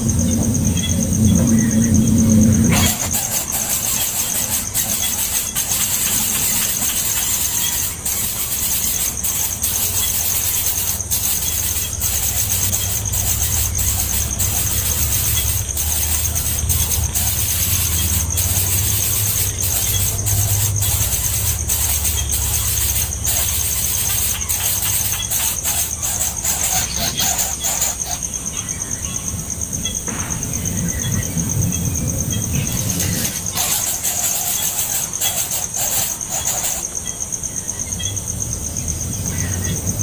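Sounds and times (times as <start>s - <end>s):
low rumble: 0.0s - 2.8s
nestling birds begging calls: 2.7s - 28.9s.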